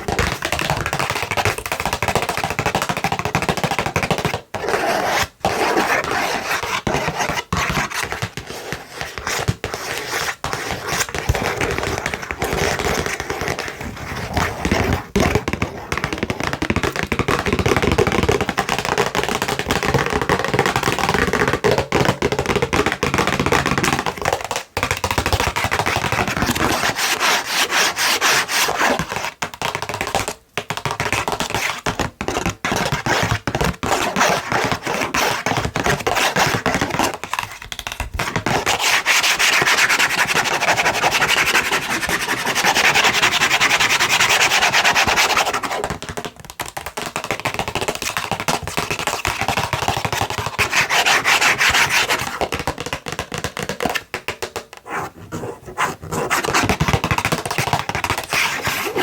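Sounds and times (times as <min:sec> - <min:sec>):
fingernails scratching cardboard box: 0:49.9 - 0:52.4, 0:54.8 - 0:59.0.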